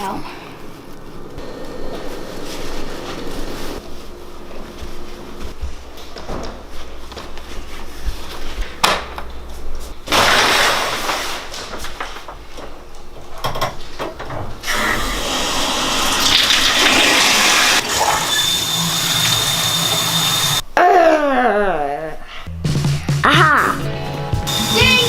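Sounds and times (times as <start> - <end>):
shower water running: 14.6 - 20.6.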